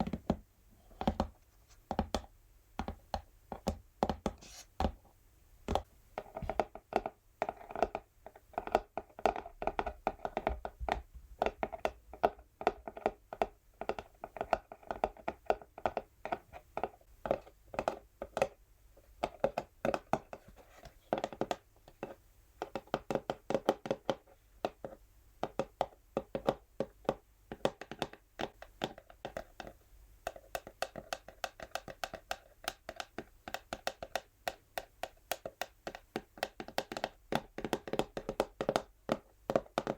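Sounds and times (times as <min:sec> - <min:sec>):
fingernails tapping on cardboard box: 0:30.3 - 0:39.9.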